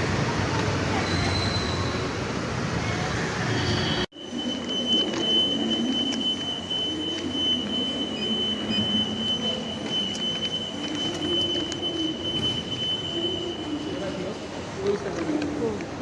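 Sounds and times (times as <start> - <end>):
train rumbling with high whine: 0.0 - 16.0.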